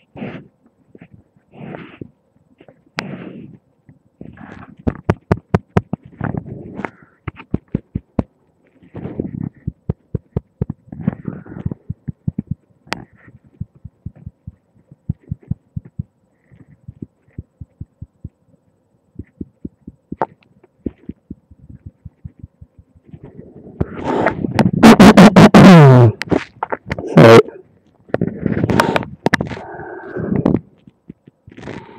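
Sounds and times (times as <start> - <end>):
muffled rubbing: 8.7 - 18.2, 19.2 - 24.8, 28.1 - 30.7.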